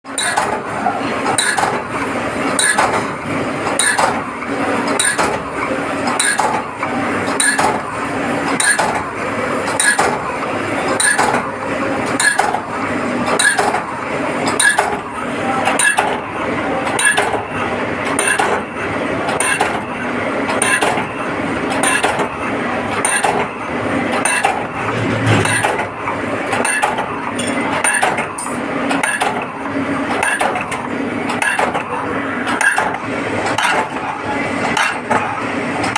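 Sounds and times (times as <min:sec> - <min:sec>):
steady machine noise: 0:24.5 - 0:26.1.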